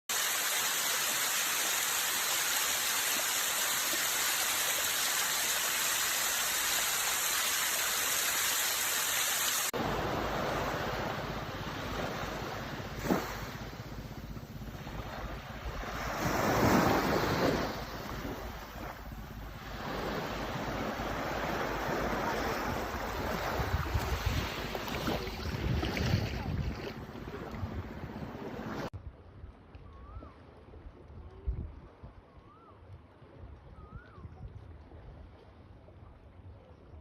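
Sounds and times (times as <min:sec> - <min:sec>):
water rushing: 0:00.0 - 0:28.9
waves washing in and out: 0:00.0 - 0:29.0
water splash: 0:00.1 - 0:13.8, 0:21.2 - 0:27.8.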